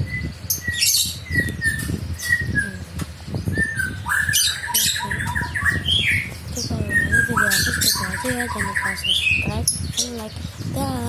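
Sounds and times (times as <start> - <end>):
rapid chattering bird call: 4.0 - 10.3.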